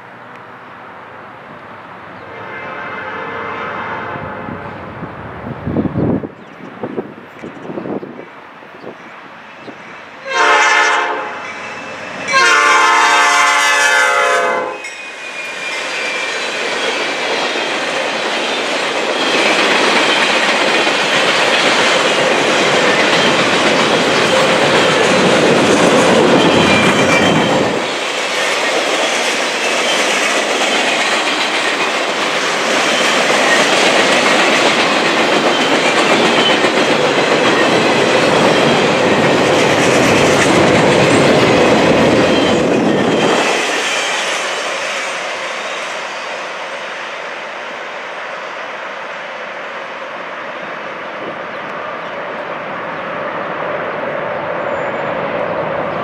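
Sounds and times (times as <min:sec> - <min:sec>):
train rumbling past: 0:00.0 - 0:56.0
locomotive horn blasts: 0:02.2 - 0:04.9, 0:10.2 - 0:11.5, 0:12.3 - 0:14.9
wheels clattering on rail joints: 0:14.8 - 0:45.8.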